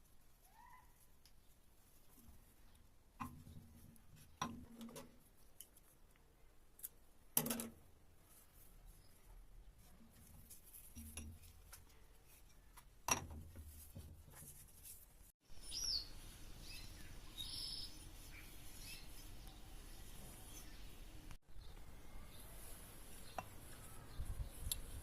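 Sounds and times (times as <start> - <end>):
outdoor background noise: 0.0 - 25.0
bird chirps: 15.5 - 24.7.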